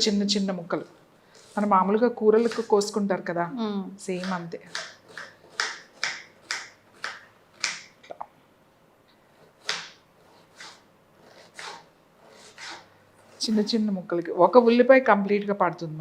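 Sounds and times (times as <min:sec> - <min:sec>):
knife chopping onion: 0:04.1 - 0:08.0, 0:09.4 - 0:12.9.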